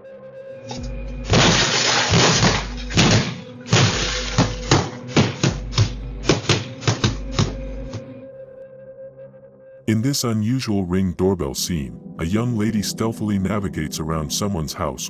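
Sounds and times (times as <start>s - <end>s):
glass shattering: 1.3s - 7.1s
axe blows on car: 1.3s - 7.6s.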